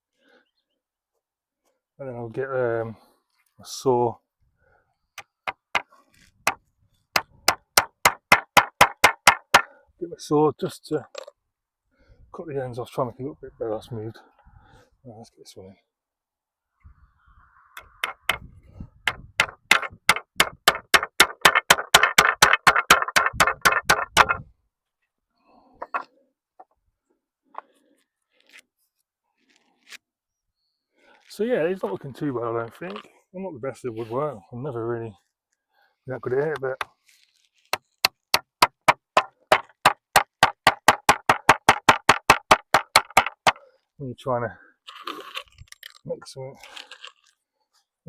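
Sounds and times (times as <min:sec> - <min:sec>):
hammer driving nail into wood: 0:05.2 - 0:09.7, 0:17.8 - 0:24.4, 0:37.7 - 0:43.6.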